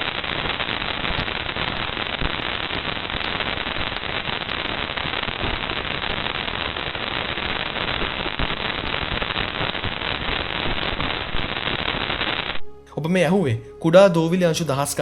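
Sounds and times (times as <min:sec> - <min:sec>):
dense static crackle: 0:00.0 - 0:12.9.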